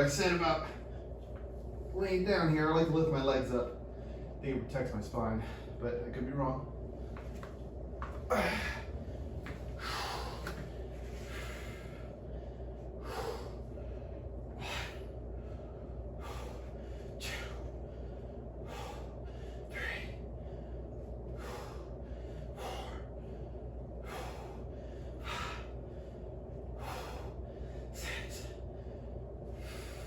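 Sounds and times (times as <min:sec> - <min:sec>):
man breathing hard in puffs: 0:07.0 - 0:30.0.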